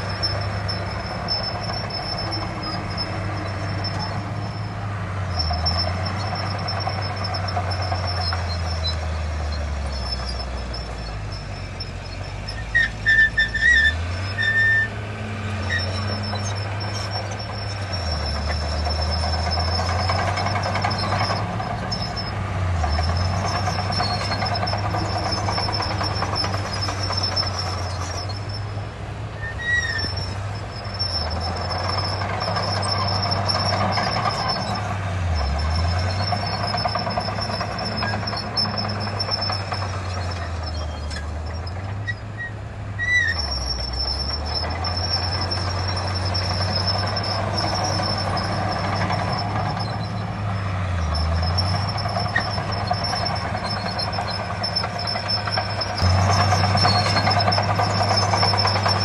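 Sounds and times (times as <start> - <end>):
diesel earthmoving machinery running: 0.0 - 59.0.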